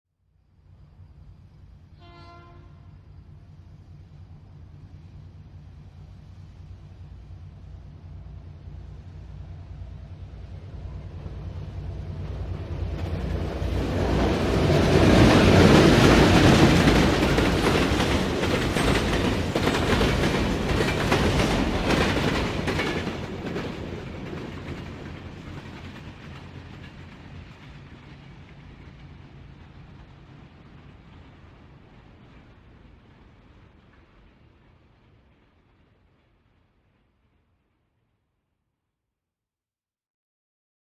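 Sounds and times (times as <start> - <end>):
train engine hum: 0.4 - 36.0
train wheels clattering over rail joints: 12.6 - 29.3.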